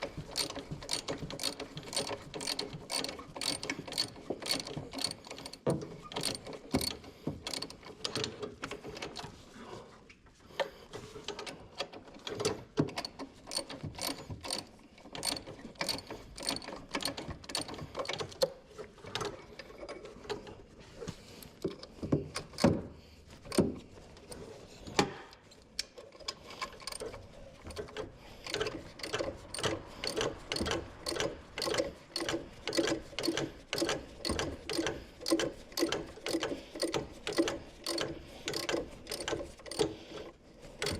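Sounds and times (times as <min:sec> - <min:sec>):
socket ratchet wrench clicking: 0:00.4 - 0:05.4, 0:28.5 - 0:39.9.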